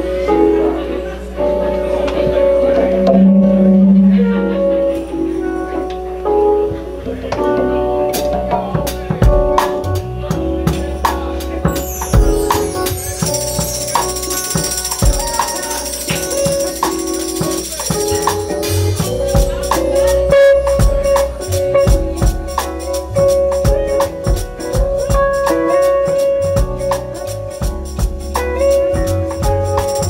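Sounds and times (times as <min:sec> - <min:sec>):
band playing held notes: 0:00.0 - 0:30.0
bass line: 0:00.0 - 0:30.0
quick percussion beat: 0:08.8 - 0:30.0.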